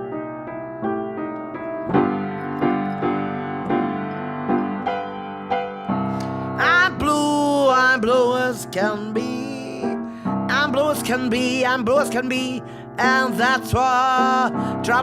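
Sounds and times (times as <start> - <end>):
piano blues chords: 0.0 - 15.0
woman singing: 6.6 - 15.0.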